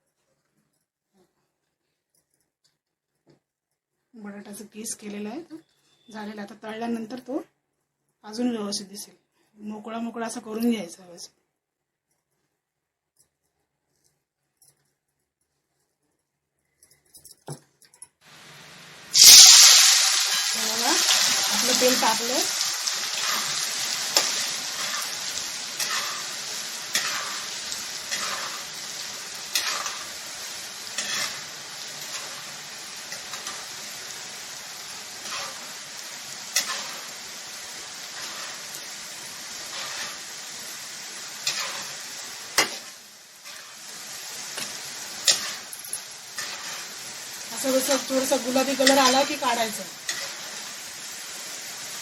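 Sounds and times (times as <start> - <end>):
potato sizzling in hot oil: 18.3 - 52.0
metal spoon scraping pan: 23.0 - 30.2, 30.9 - 33.7, 36.5 - 37.1, 39.6 - 40.3, 41.4 - 44.0, 44.6 - 47.0, 47.6 - 50.6.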